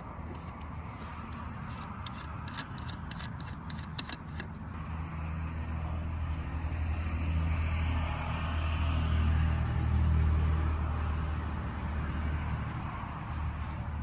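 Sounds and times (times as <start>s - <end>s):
sharp clicks and taps: 0.0s - 4.8s.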